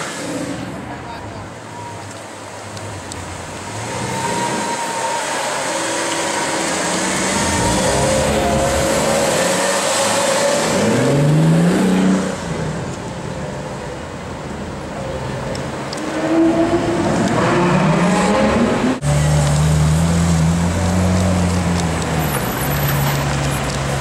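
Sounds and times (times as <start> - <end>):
street traffic noise: 0.0 - 24.0
car engine accelerating hard: 3.7 - 12.8.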